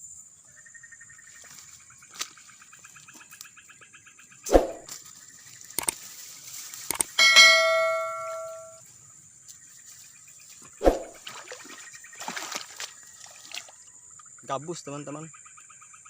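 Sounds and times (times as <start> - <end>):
insects chirping: 0.0 - 16.0
metallic ring: 7.2 - 8.8.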